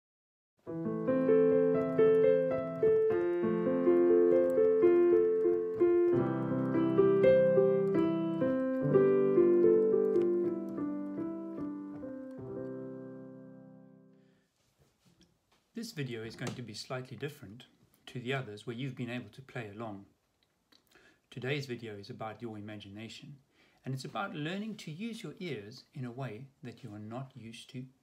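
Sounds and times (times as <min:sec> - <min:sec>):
piano melody over chords: 0:00.6 - 0:14.2.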